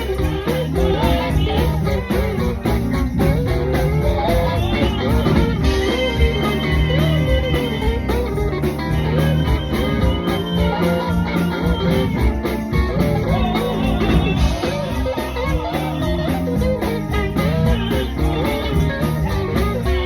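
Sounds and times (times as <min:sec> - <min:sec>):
guitar music: 0:00.0 - 0:20.0
low bass notes: 0:00.0 - 0:20.0.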